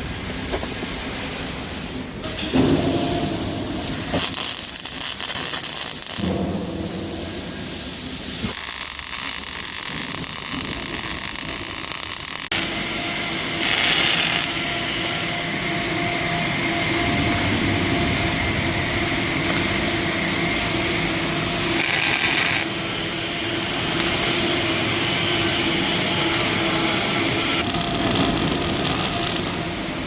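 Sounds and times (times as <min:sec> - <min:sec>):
loud hissing surges: 0:08.2 - 0:30.0
power tool humming: 0:08.5 - 0:22.8, 0:25.4 - 0:29.9.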